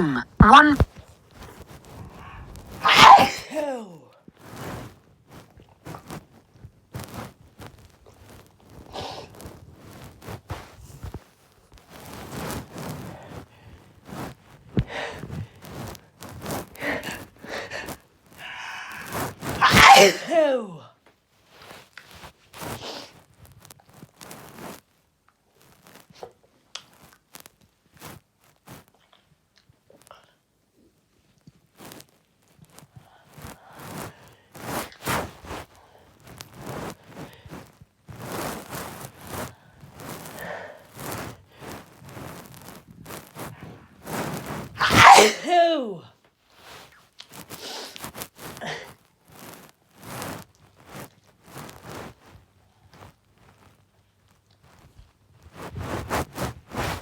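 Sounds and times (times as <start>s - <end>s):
breathy sound: 0.0s - 0.8s, 2.0s - 4.1s
person sneezing: 0.0s - 0.9s, 2.0s - 4.2s, 16.8s - 20.9s, 44.8s - 46.1s, 47.7s - 49.0s
rustling and crinkling handling noises: 0.2s - 2.8s, 4.1s - 19.6s, 20.9s - 29.9s, 30.9s - 44.8s, 46.1s - 57.0s.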